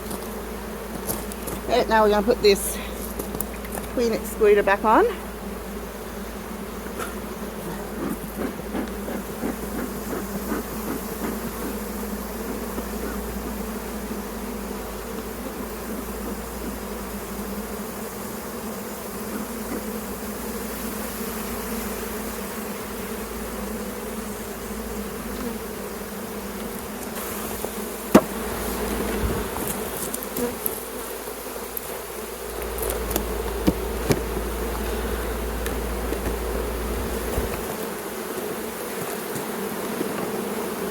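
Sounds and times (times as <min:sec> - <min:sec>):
bees buzzing: 0:00.0 - 0:40.9.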